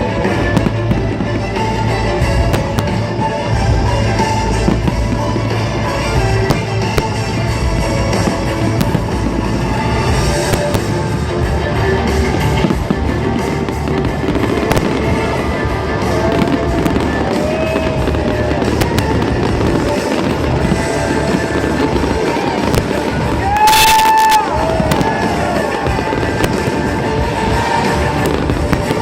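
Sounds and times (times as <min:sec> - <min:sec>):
fireworks crackling and popping: 0:00.0 - 0:29.0
music playing: 0:00.0 - 0:29.0
firework whistles: 0:12.1 - 0:29.0.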